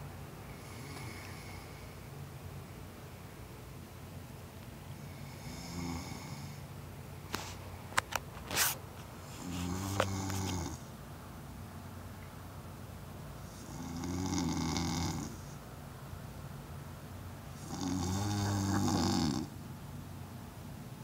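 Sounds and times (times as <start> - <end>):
man snoring: 0.5 - 1.8, 5.1 - 6.6, 9.6 - 10.8, 13.5 - 15.4, 17.6 - 19.5.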